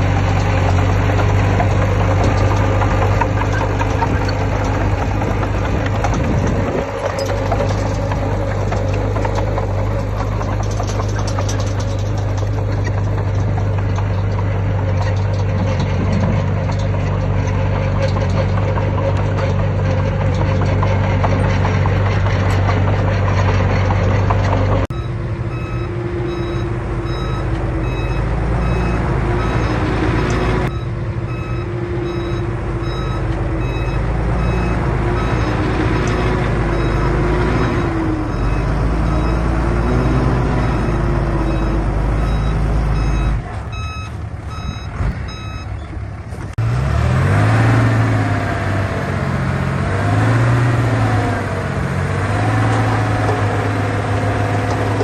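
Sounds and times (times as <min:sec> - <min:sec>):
heavy diesel machinery running: 0:00.0 - 0:55.0
reversing alarm beeping: 0:24.9 - 0:45.9.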